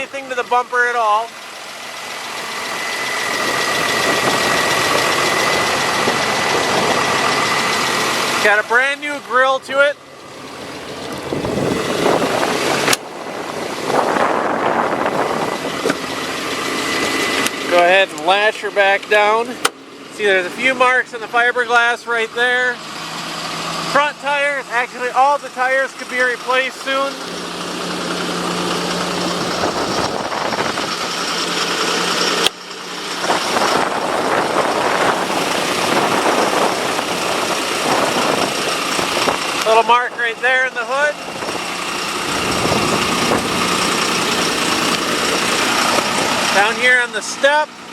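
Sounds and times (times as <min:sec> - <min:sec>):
wind gusting across microphone: 0:11.1 - 0:16.1, 0:29.2 - 0:31.1, 0:33.2 - 0:39.6, 0:41.2 - 0:44.8.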